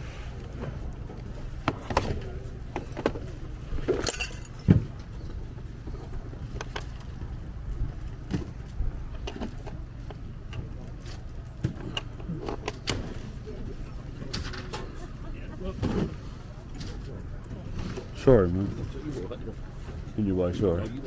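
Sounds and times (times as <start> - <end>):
clicks and clinks: 3.8 - 5.1.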